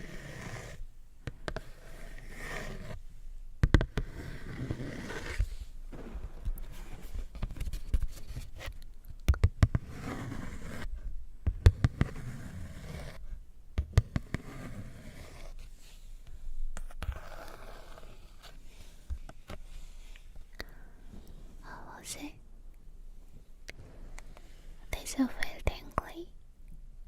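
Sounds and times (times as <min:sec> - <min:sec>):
soft scratching and scraping: 0:00.0 - 0:09.0, 0:09.7 - 0:13.4, 0:14.0 - 0:22.4.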